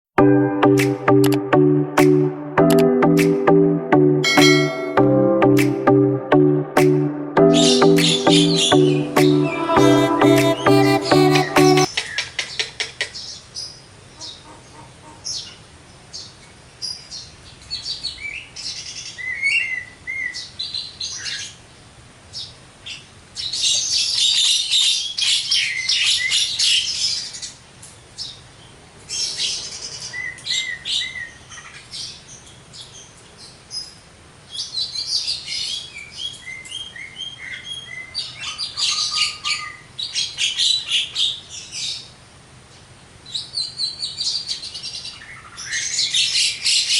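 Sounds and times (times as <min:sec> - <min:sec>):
myna bird singing: 0:07.4 - 0:09.8.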